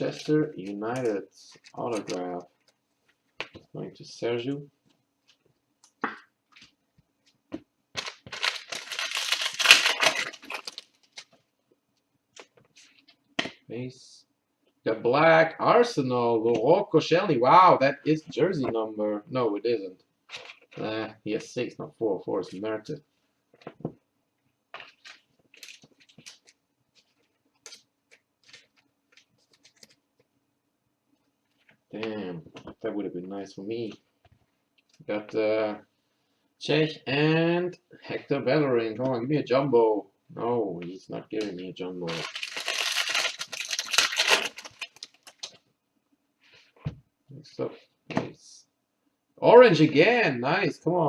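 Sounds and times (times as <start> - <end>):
foil wrapper tearing and crinkling: 8.0 - 11.3, 42.0 - 45.5.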